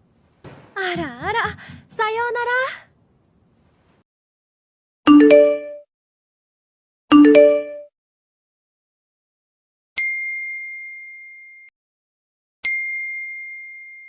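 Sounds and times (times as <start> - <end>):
phone notification chime: 5.1 - 5.8, 7.1 - 7.9
high ding: 12.6 - 14.0.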